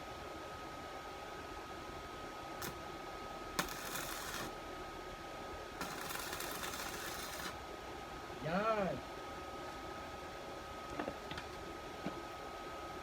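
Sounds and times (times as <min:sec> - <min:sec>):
welding arc crackling and hissing: 0:02.6 - 0:02.8, 0:03.6 - 0:04.6, 0:05.8 - 0:07.6.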